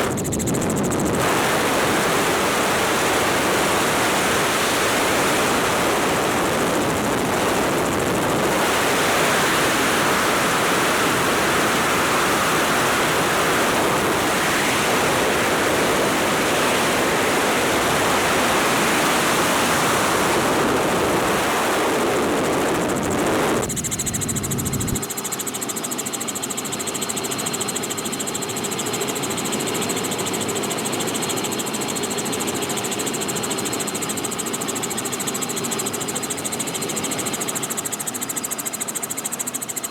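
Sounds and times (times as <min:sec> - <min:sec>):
loud wind rushing over microphone: 0:00.0 - 0:25.1
helicopter engine and rotor drone: 0:00.0 - 0:39.9.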